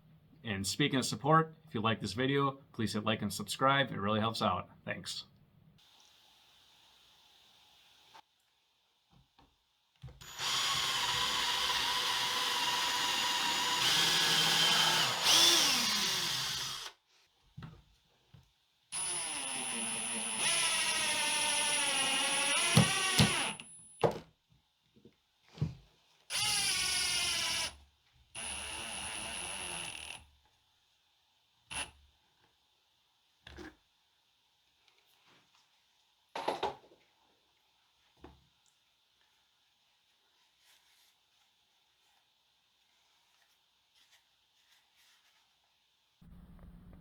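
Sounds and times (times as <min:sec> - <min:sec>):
power drill driving screws: 0:10.2 - 0:17.0, 0:19.0 - 0:23.8, 0:26.3 - 0:27.8, 0:28.4 - 0:30.2.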